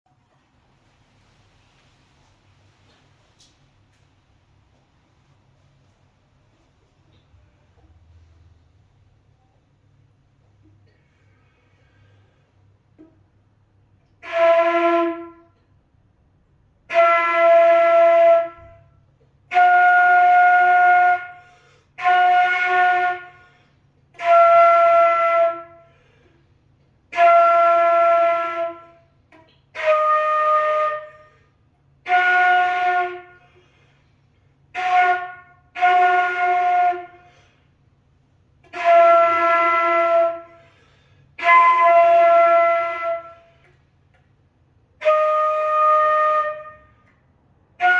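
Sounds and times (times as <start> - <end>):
wind instrument held notes: 38.6 - 43.8.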